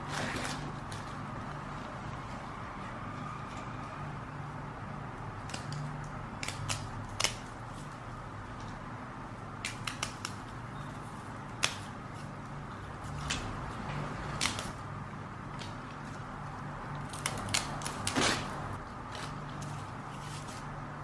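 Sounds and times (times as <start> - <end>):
low room hum: 0.0 - 21.0.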